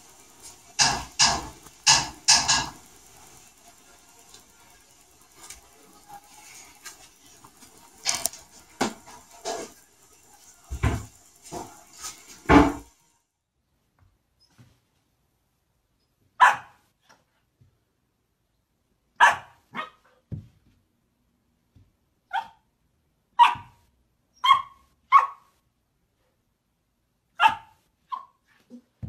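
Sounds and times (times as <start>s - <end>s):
dog barking: 16.4s - 16.8s, 19.2s - 20.2s, 22.3s - 22.6s, 23.4s - 23.8s, 24.4s - 25.5s, 27.4s - 28.4s.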